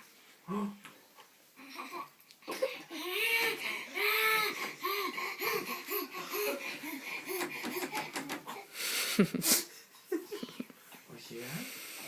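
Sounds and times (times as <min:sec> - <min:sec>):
breathy rush of air: 0:02.7 - 0:09.8
young child laughing: 0:09.2 - 0:10.7.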